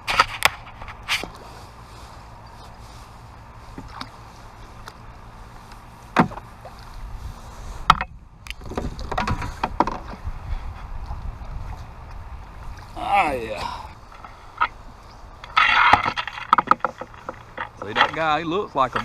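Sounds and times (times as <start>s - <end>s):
wind rumbling on microphone: 0.0s - 19.0s
sharp knocks: 6.2s - 6.4s
rustling: 11.7s - 19.0s.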